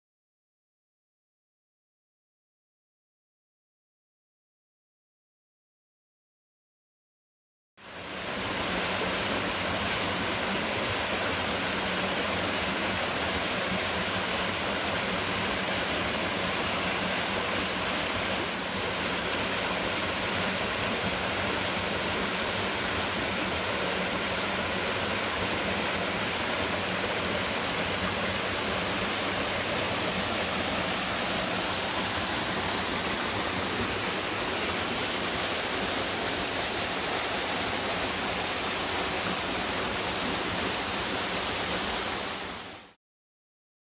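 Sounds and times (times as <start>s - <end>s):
waterfall rushing: 8.1s - 42.8s.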